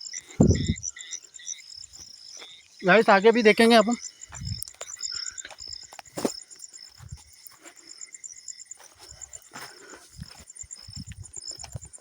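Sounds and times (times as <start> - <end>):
crickets chirping: 0.0 - 12.0
low thumps: 0.4 - 0.8.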